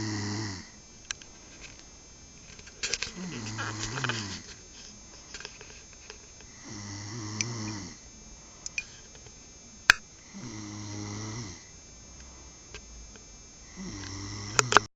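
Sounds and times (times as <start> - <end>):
person snoring: 0.0 - 0.8, 3.0 - 4.5, 6.5 - 8.8, 10.2 - 12.6, 13.6 - 14.9.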